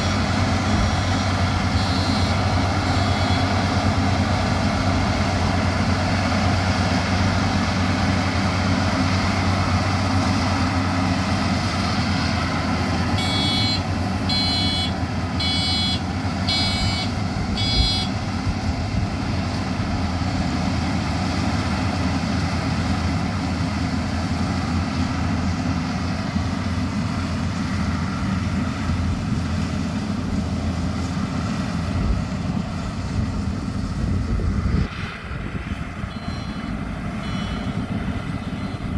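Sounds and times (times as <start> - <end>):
electronic alarm beeps: 0.0 - 3.8, 13.2 - 18.2, 36.1 - 38.9
harvester engine drone: 0.0 - 38.9.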